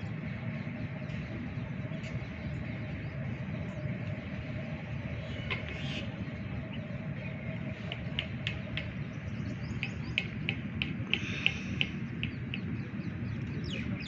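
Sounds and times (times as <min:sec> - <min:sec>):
low outdoor rumble: 0:00.0 - 0:14.0
small birds chirping: 0:00.0 - 0:14.0.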